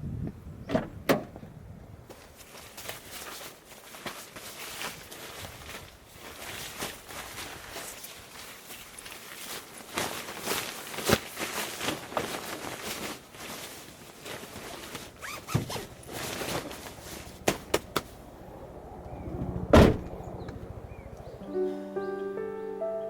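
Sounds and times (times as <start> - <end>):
rustles and knocks: 14.3 - 18.2
loud thud: 19.7 - 20.2.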